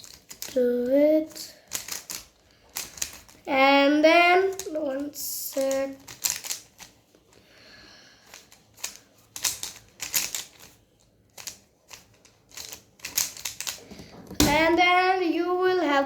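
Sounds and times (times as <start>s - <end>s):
puzzle cube clicking: 0.0s - 0.6s, 1.7s - 3.4s, 5.5s - 7.0s, 8.3s - 14.8s.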